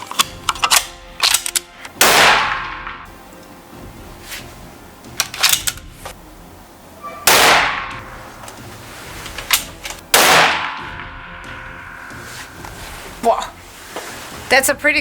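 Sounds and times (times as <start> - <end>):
rifle shots: 2.0 - 3.0, 7.2 - 8.2, 10.1 - 11.2.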